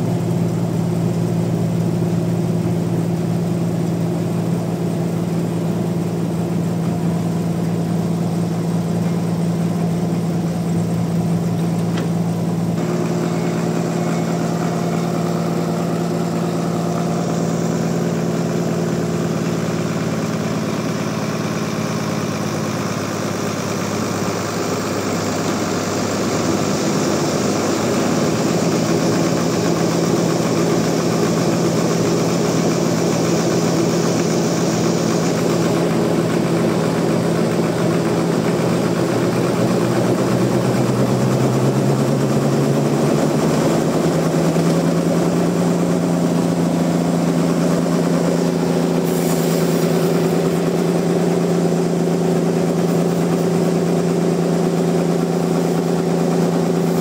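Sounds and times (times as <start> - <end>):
sawmill machinery engine drone: 0.0 - 57.0
high hiss: 26.4 - 37.1, 45.2 - 53.9.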